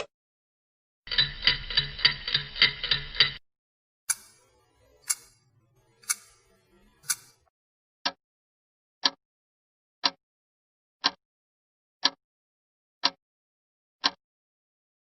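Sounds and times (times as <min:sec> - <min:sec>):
clock ticking: 0:01.1 - 0:03.4, 0:04.1 - 0:07.5
sharp tick: 0:04.1 - 0:05.4, 0:06.0 - 0:07.4
mechanical clicking: 0:04.1 - 0:07.4.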